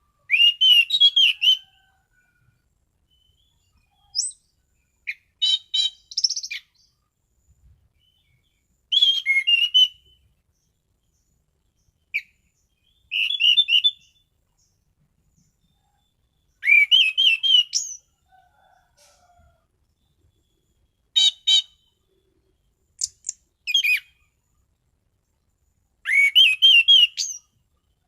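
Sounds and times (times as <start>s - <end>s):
thrush singing whistled notes: 0.0s - 2.3s, 3.1s - 7.0s, 8.0s - 10.4s, 11.8s - 14.3s, 15.4s - 18.1s, 20.0s - 22.4s, 23.0s - 24.4s, 26.0s - 27.6s.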